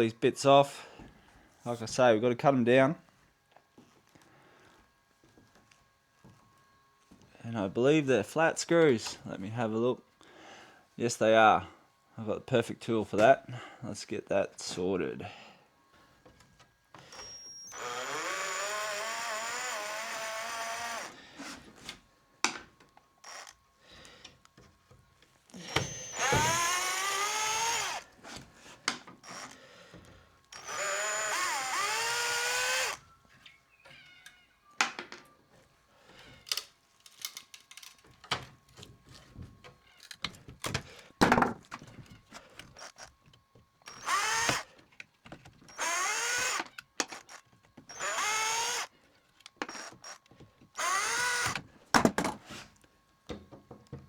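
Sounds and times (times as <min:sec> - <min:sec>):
cordless drill motor whine: 0:17.0 - 0:21.6, 0:23.2 - 0:24.1, 0:25.5 - 0:28.3, 0:29.2 - 0:33.3, 0:42.0 - 0:43.1, 0:43.8 - 0:44.7, 0:45.6 - 0:51.7.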